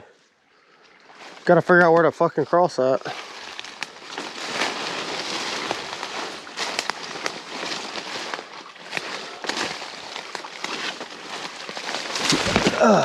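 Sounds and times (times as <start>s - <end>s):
footsteps crunching through dry leaves: 3.0s - 13.0s
twigs cracking underfoot: 3.0s - 13.0s.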